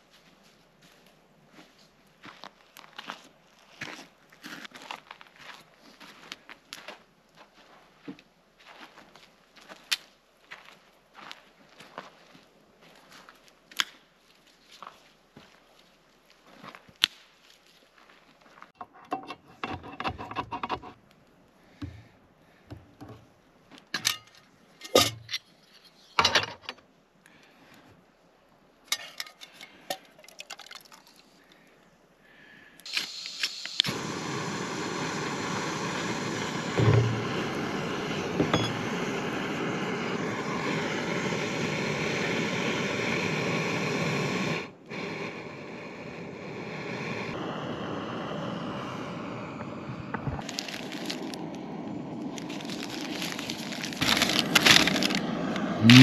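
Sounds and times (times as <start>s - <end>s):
loud steady hiss: 32.9s - 56.0s.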